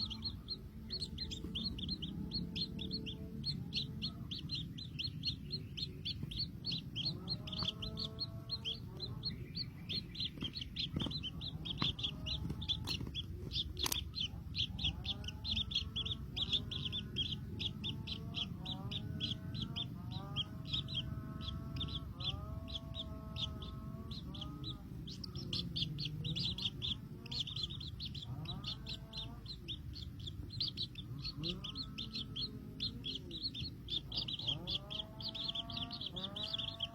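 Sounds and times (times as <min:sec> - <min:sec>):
young birds chirping: 0:00.0 - 0:36.9.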